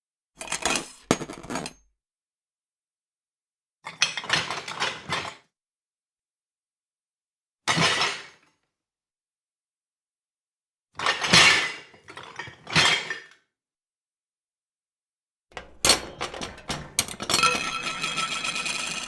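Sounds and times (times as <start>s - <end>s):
dishes clattering and clinking: 0.4s - 1.8s, 15.6s - 19.0s.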